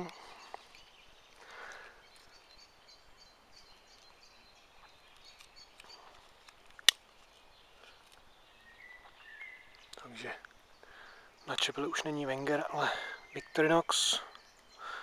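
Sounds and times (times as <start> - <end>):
faint bird chirps: 0.0 - 6.4, 7.1 - 15.0
soft rustle: 4.8 - 8.4.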